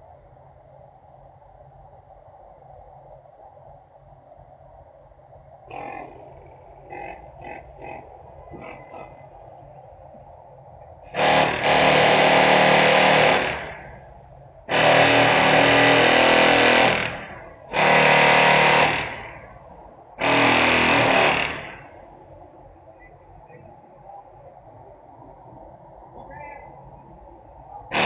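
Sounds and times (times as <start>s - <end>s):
loud pitched industrial blasts: 11.0s - 22.1s.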